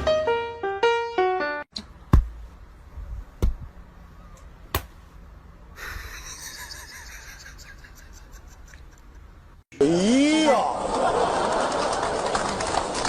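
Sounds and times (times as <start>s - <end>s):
sharp knocks: 2.1s - 2.5s, 3.4s - 3.7s.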